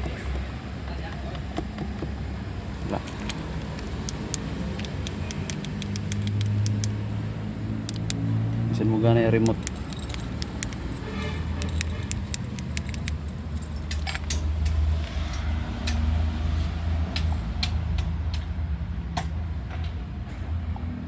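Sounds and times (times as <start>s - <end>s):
car keys jangling: 2.9s - 6.9s, 7.9s - 8.2s, 9.4s - 14.5s
sharp clicks: 3.0s - 7.0s, 7.8s - 8.2s, 9.4s - 10.9s, 11.5s - 13.3s.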